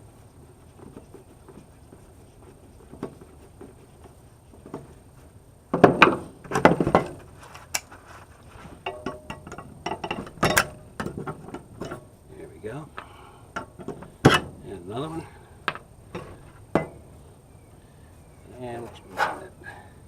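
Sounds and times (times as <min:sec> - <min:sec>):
tools clattering on work surface: 0:08.8 - 0:12.0.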